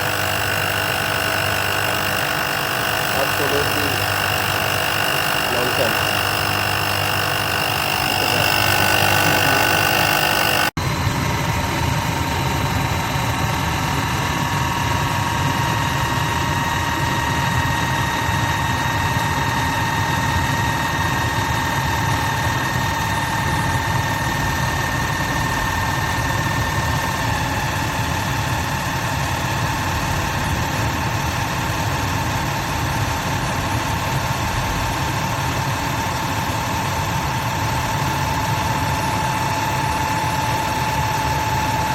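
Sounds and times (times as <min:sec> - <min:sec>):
electric motor running: 0:00.0 - 0:10.8.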